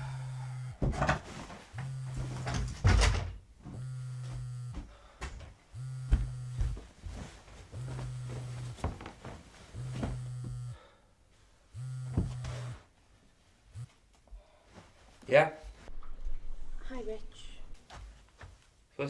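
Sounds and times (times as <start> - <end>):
phone vibrating on hard surface: 0.0 - 5.0, 5.7 - 10.9, 11.8 - 12.8.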